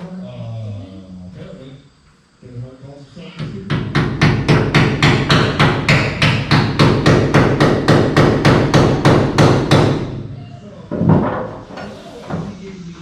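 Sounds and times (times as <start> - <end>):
rapid hammering: 3.4 - 10.2.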